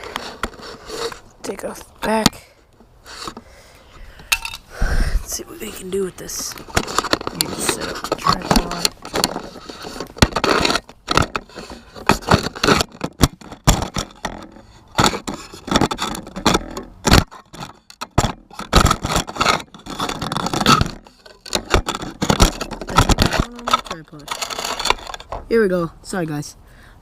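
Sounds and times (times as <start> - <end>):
handling clicks knocks and scrapes: 0.0 - 4.6, 5.3 - 25.8.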